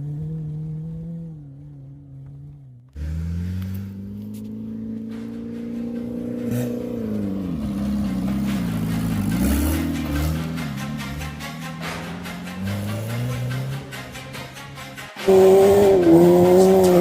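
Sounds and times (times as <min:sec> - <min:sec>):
rally car engine revving: 0:00.0 - 0:17.0.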